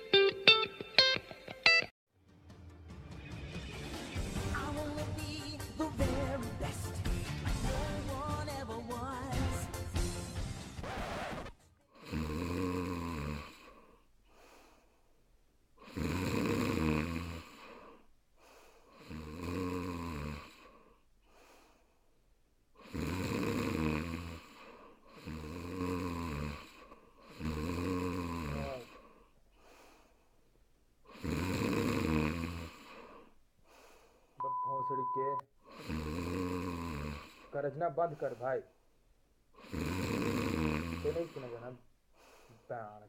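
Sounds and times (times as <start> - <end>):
music: 0.1 - 10.8
person snoring: 10.8 - 14.0, 15.8 - 18.1, 18.9 - 21.0, 22.8 - 29.3, 31.1 - 33.4, 35.6 - 37.6, 39.6 - 41.8
quiet breaths: 11.8 - 35.0, 35.6 - 38.9, 39.5 - 43.0.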